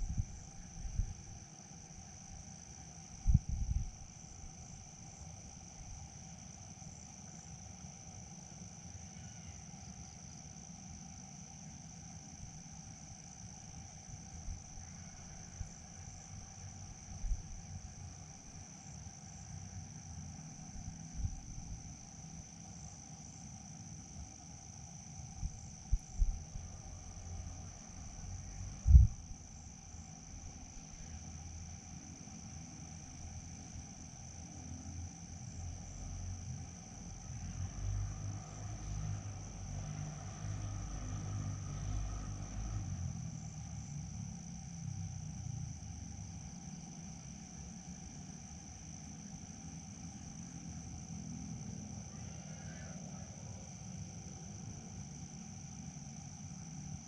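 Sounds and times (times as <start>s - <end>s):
crickets trilling: 0.0s - 57.0s
low rumble: 25.4s - 29.5s.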